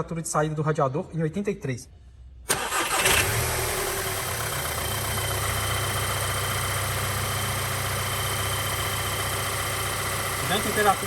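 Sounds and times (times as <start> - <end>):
car engine idling: 2.5 - 11.0.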